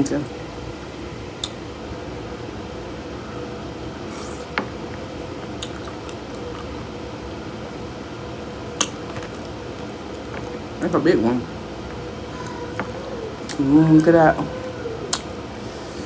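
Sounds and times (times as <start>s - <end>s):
steady low hum: 0.0s - 16.0s
crawfish shells cracking: 4.5s - 7.2s, 8.2s - 15.6s.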